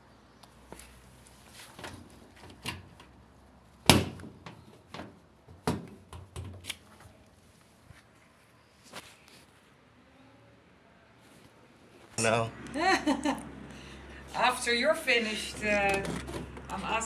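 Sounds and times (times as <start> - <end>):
knocks and clicks of objects handled: 15.7 - 16.8.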